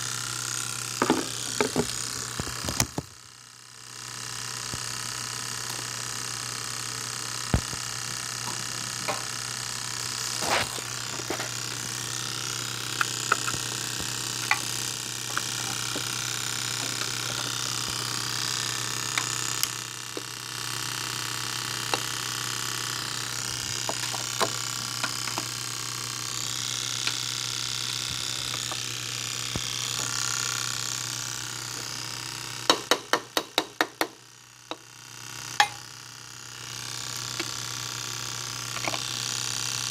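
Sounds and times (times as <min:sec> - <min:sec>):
steady hiss and hum: 0:04.6 - 0:31.9.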